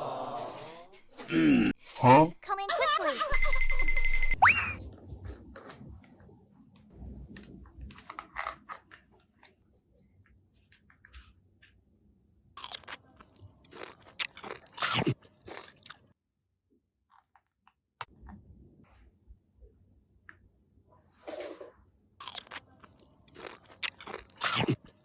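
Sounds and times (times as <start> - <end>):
crunchy bites and chewing: 12.6 - 16.2, 22.2 - 25.0.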